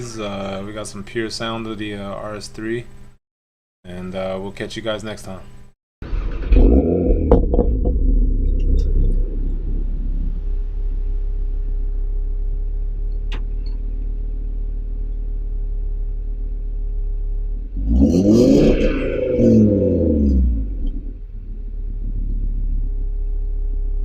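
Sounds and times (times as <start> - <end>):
car engine revving and idling: 6.0 - 24.0.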